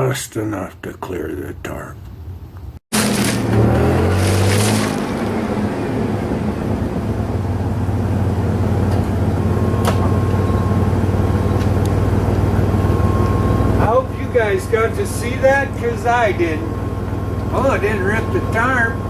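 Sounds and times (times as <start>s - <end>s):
vehicle engine humming: 0.0s - 19.0s
faint steady whine: 7.7s - 19.0s.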